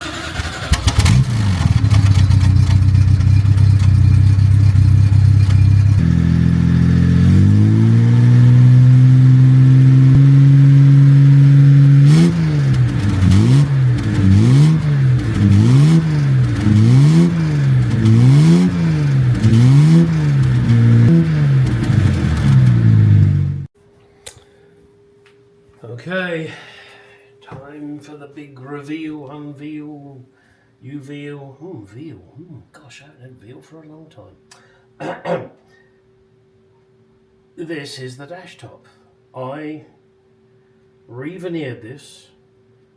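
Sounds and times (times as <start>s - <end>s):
car engine idling and revving: 0.0s - 23.7s.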